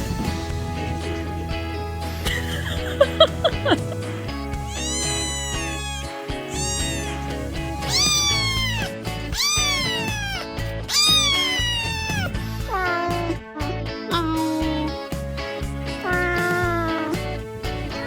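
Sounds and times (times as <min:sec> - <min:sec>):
background music: 0:00.0 - 0:18.0
kitten meowing: 0:04.6 - 0:13.2.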